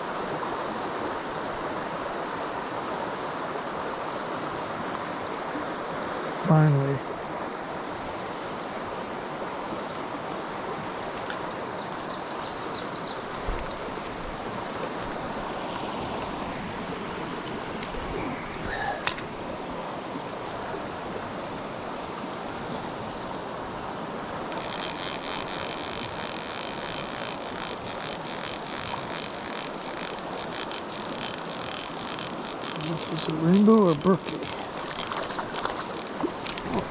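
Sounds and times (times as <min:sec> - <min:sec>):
fly reel clicking rapidly: 0:24.5 - 0:36.9.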